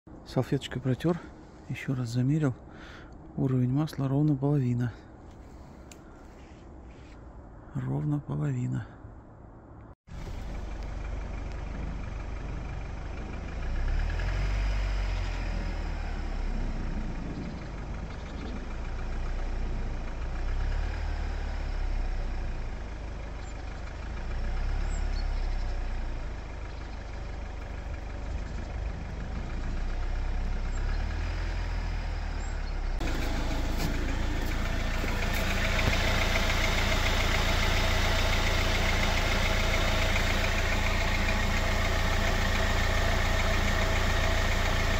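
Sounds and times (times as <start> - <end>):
car engine idling: 10.1 - 44.9
light tapping engine knock: 33.0 - 44.9.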